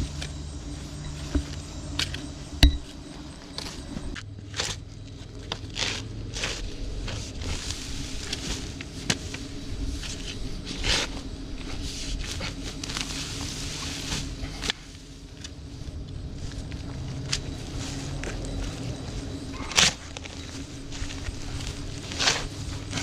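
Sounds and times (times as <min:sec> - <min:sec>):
soil and dry vines scraping: 0:00.0 - 0:23.0
steady low hum: 0:00.0 - 0:23.0
footsteps: 0:02.6 - 0:04.2.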